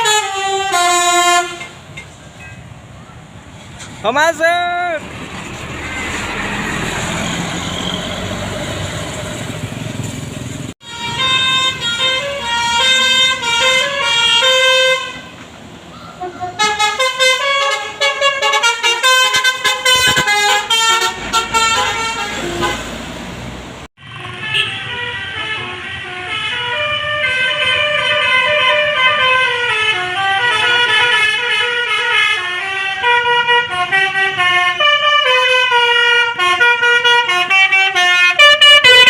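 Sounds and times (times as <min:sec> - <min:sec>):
musical bus horn tune: 0:00.0 - 0:02.7, 0:10.8 - 0:15.5, 0:16.1 - 0:23.0, 0:24.0 - 0:39.0
bus engine and road rumble: 0:00.0 - 0:39.0.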